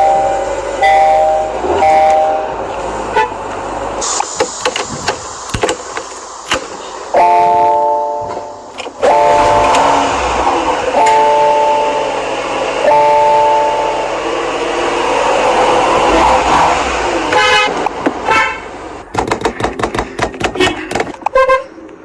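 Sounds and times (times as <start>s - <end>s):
car horn honking: 0.0s - 4.9s, 6.8s - 19.2s, 20.0s - 22.0s.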